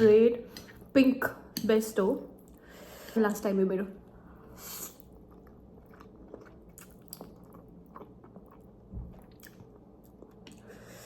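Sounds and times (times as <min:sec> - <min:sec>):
person chewing noodles: 0:04.3 - 0:11.0.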